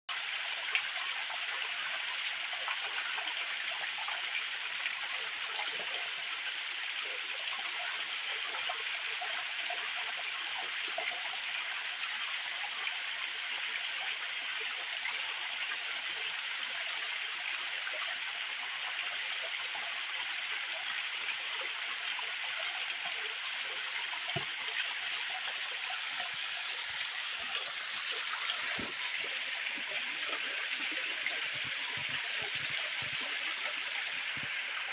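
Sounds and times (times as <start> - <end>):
flowing water rushing: 19.3 - 34.9.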